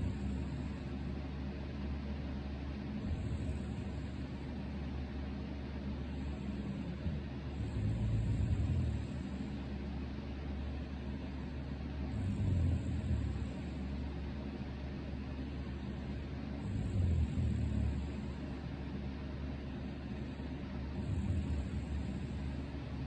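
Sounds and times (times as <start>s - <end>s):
electric fan whirring: 0.0s - 23.0s
person snoring: 6.3s - 9.4s, 16.6s - 18.4s.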